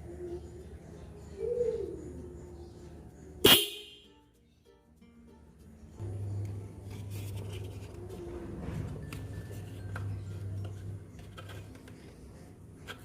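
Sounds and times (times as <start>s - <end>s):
steady low hum: 5.6s - 13.0s
rubbing and scratching: 6.8s - 13.0s.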